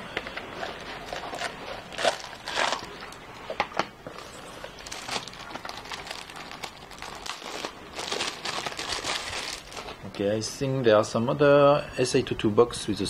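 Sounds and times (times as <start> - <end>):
packaging rustling and crinkling: 0.1 - 10.4.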